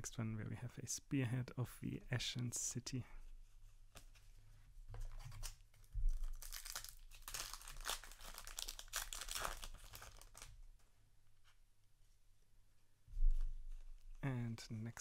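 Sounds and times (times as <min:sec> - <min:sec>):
wrapper tearing and crinkling: 0:05.2 - 0:10.6.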